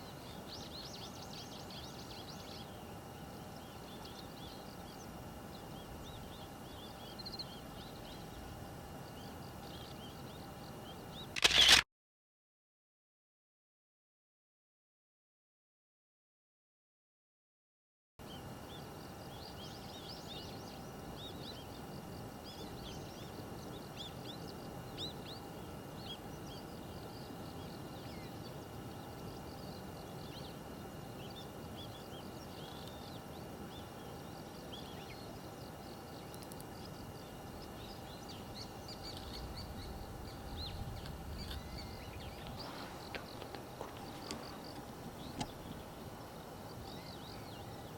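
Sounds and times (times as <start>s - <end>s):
outdoor background hiss: 0.0s - 11.8s, 18.2s - 47.9s
songbirds chirping: 0.0s - 11.8s, 18.2s - 47.9s
thin steady tones: 18.3s - 47.9s.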